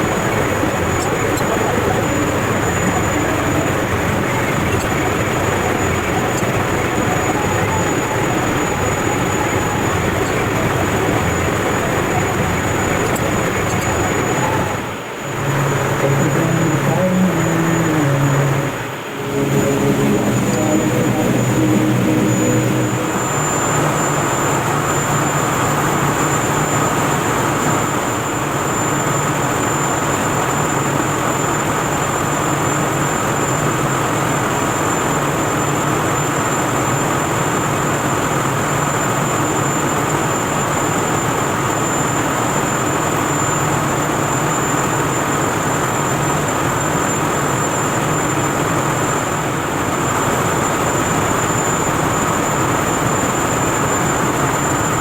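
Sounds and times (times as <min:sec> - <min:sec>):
boiler room machinery roar: 0:00.0 - 0:26.2
high-pitched whine: 0:00.0 - 0:35.5.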